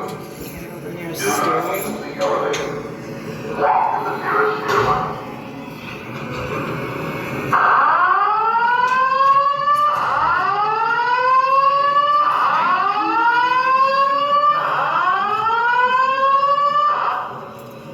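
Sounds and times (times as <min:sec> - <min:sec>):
fire alarm whoop tone: 0:07.6 - 0:17.4.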